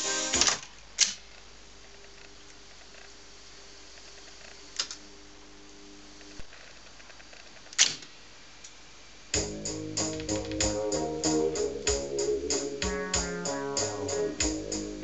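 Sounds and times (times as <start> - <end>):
strummed guitar music: 0.0 - 0.4, 9.4 - 15.0
faint hum: 0.0 - 7.0, 8.3 - 15.0.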